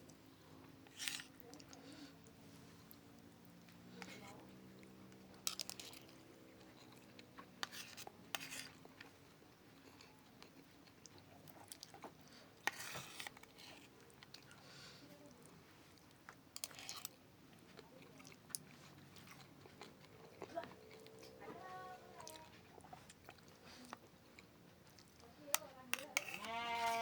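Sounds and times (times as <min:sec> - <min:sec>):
soft wet clicks and crunches: 0:00.0 - 0:27.0
person chewing fish: 0:04.7 - 0:21.4, 0:22.2 - 0:25.2.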